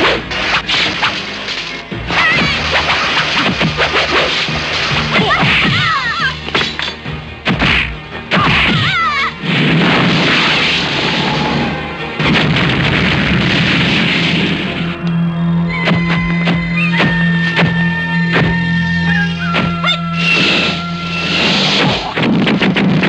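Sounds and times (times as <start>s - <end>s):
music: 0.0s - 23.0s
punch and kick impacts: 7.4s - 9.0s.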